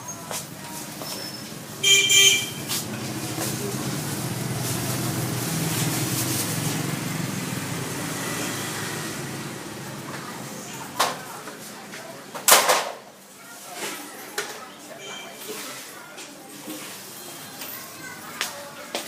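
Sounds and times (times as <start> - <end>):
vehicle horn honk: 1.8 - 2.7, 15.0 - 15.5
vehicle engine hum: 2.5 - 11.0.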